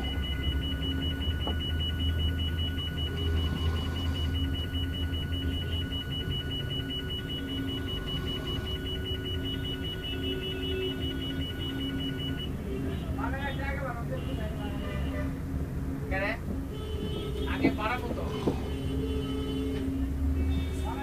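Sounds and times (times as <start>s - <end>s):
pulsing high-pitched tone: 0.0s - 12.4s.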